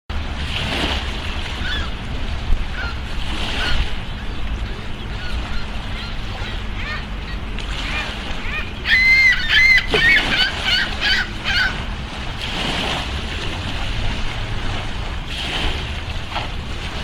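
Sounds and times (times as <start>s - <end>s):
birds chirping: 1.4s - 12.1s.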